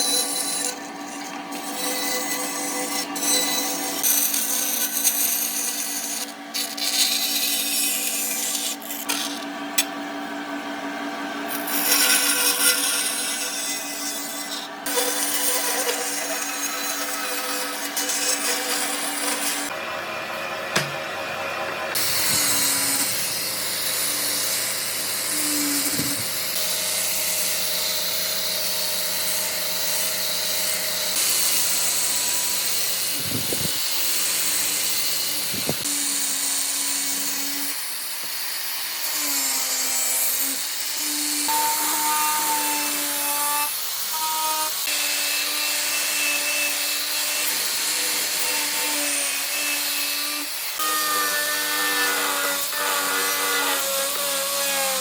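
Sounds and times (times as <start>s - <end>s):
power tool motor whining: 21.9s - 55.0s.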